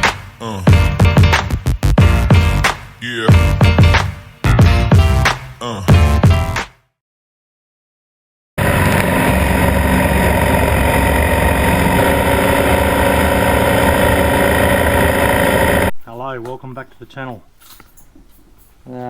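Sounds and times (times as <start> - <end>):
motorcycle engine running steadily: 8.6 - 15.9.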